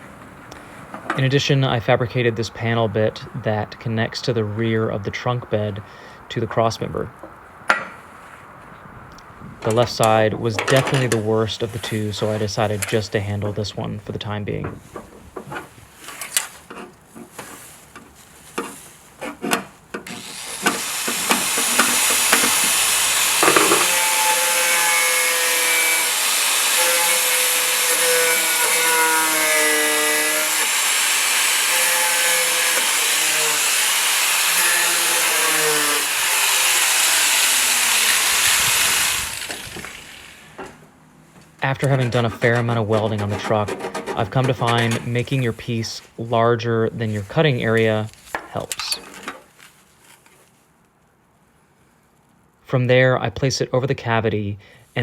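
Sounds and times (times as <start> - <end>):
angle grinder cutting metal: 20.1 - 40.7, 41.8 - 45.5.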